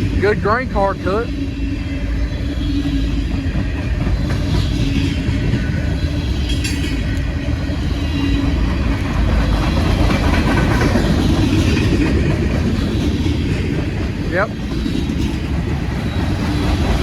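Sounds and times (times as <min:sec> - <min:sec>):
freight train wheels rumbling: 0:00.0 - 0:17.0.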